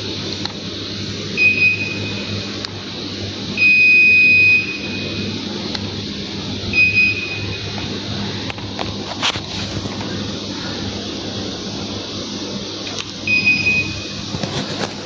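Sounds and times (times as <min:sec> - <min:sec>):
steady running hum: 0:00.0 - 0:15.0
electronic beeps: 0:13.2 - 0:14.2.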